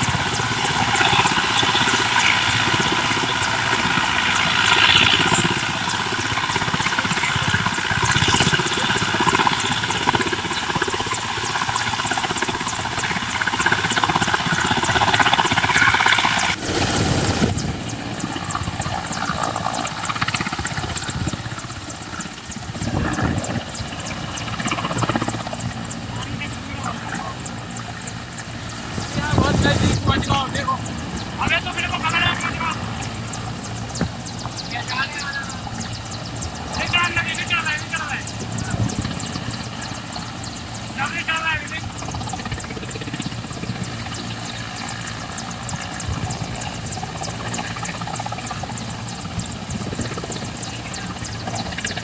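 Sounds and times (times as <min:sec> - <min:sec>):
helicopter rotor chopping: 0:00.0 - 0:52.0.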